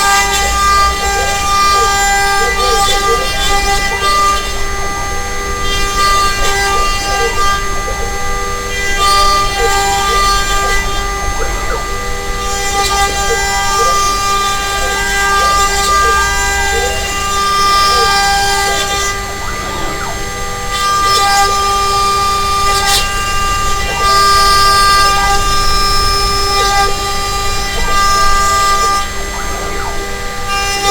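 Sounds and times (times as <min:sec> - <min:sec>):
bit cutting wood hiss: 0:00.0 - 0:30.9
spindle high whine: 0:00.0 - 0:30.9
stepper motors whirring: 0:00.0 - 0:30.9.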